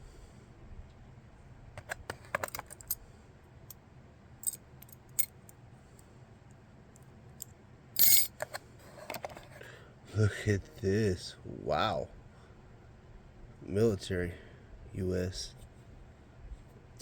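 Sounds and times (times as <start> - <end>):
metal pocket knives clinking: 8.0 - 8.4.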